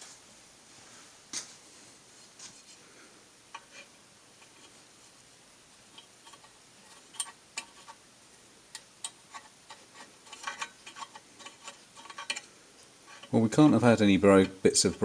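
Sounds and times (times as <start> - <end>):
hand tools clicking on metal: 8.7 - 12.5.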